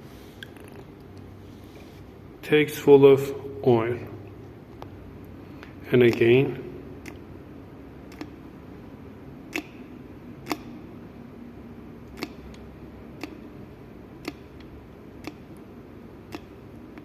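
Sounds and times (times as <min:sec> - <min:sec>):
low steady hum: 0:00.0 - 0:17.0
small sharp clicks: 0:09.5 - 0:09.8, 0:10.4 - 0:10.7, 0:12.1 - 0:12.6, 0:13.2 - 0:13.4, 0:14.2 - 0:15.6, 0:16.3 - 0:17.0.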